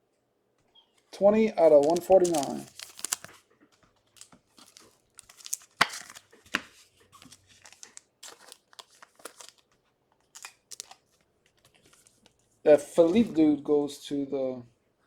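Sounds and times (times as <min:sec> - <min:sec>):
cards rustling and clicking: 0:01.0 - 0:13.5
card snapping: 0:04.6 - 0:06.7.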